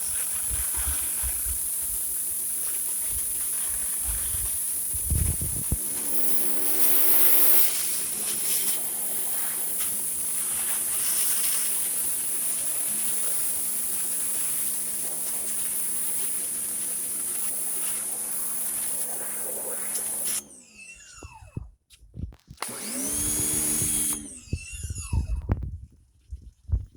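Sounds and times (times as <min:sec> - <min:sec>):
hiss of water spray: 0:00.0 - 0:20.4
pressure washer motor hum: 0:00.0 - 0:21.8, 0:22.6 - 0:25.6.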